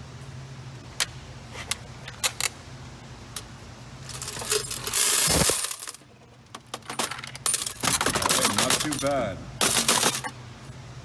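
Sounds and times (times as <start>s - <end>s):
coins clinking: 4.1s - 6.0s, 6.8s - 10.4s
coins pouring into a bin: 4.1s - 6.0s, 7.5s - 10.3s.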